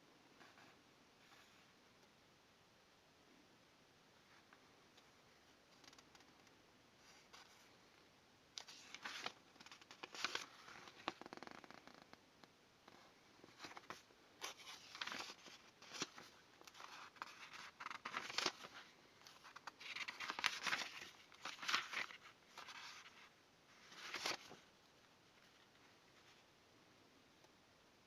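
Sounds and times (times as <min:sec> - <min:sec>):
packaging rustling and crinkling: 0:13.4 - 0:24.6.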